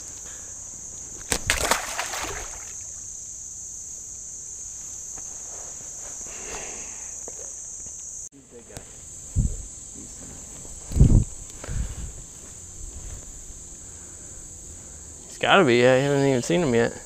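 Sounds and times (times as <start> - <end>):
high-pitched insect chorus: 0.0 - 17.0
scuffling noise: 4.7 - 6.7, 10.1 - 13.5.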